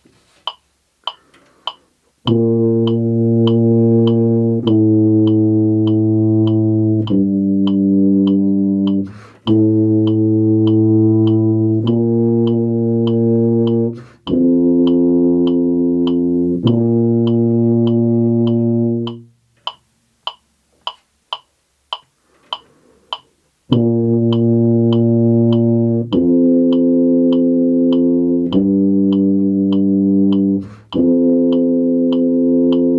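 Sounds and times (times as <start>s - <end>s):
metronome clicking: 0.4s - 32.9s
quick breaths: 1.1s - 2.0s, 9.1s - 9.5s
tuba playing sustained notes: 2.2s - 19.4s, 23.7s - 32.9s.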